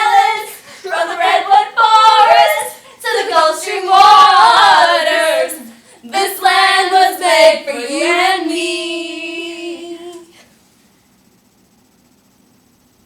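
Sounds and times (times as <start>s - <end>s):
girl singing unaccompanied: 0.0s - 10.4s.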